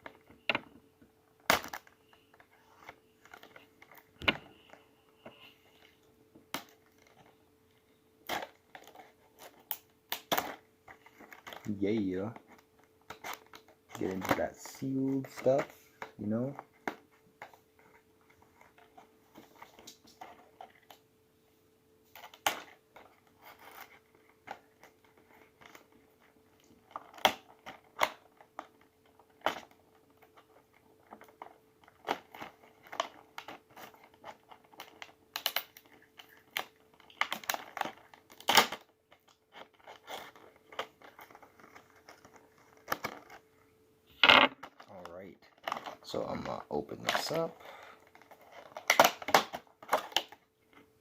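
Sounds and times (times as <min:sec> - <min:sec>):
faint steady hum: 0:00.0 - 0:51.0
packaging tearing: 0:31.1 - 0:43.4.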